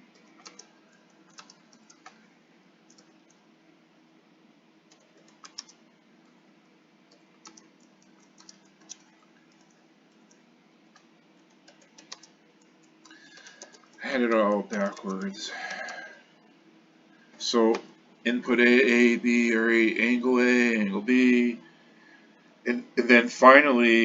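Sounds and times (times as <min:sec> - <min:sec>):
faint steady hum: 0:00.0 - 0:24.0
keyboard keys tapping: 0:00.1 - 0:02.2, 0:04.9 - 0:05.8, 0:07.1 - 0:16.0.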